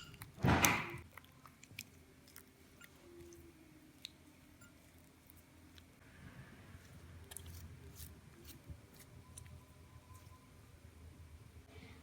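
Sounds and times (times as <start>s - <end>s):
wet slime squelch: 6.7s - 10.4s.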